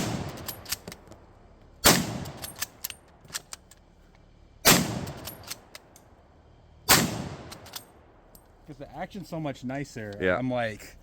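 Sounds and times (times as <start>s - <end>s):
rifle shots: 0.0s - 0.8s, 1.8s - 2.7s, 4.6s - 5.6s, 6.9s - 7.8s.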